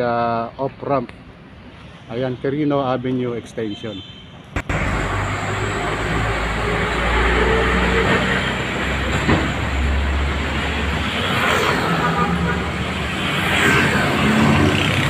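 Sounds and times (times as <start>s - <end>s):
street traffic: 0.0s - 15.0s
heavy vehicle rumbling past: 4.6s - 15.0s.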